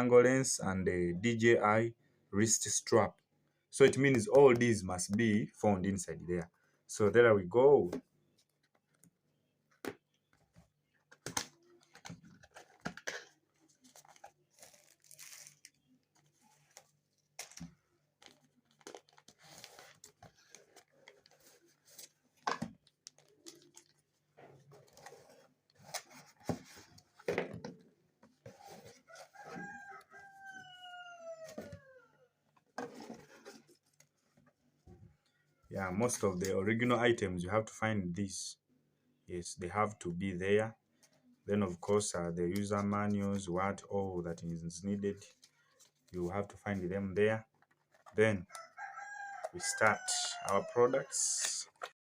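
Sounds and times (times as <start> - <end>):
cardboard packaging being opened: 11.6 - 22.2
rooster crowing: 29.2 - 32.1.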